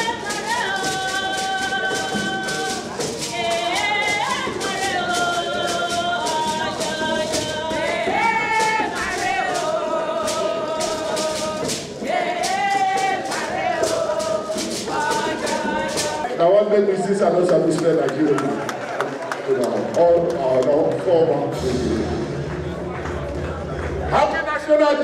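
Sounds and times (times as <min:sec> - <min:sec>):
voices singing sliding notes: 0:00.0 - 0:16.4
light high percussion beat: 0:00.0 - 0:17.8, 0:20.5 - 0:25.0.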